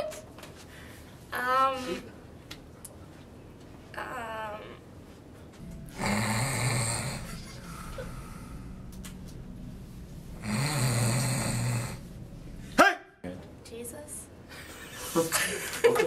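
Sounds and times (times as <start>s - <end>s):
person imitating snoring: 5.9s - 8.6s, 10.4s - 12.0s.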